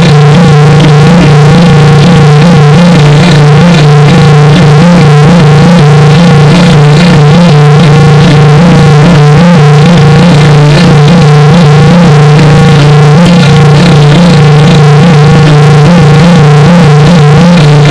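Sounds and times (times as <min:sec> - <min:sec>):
distorted electronic drone: 0:00.0 - 0:17.9
warbling electronic tones: 0:00.0 - 0:17.9.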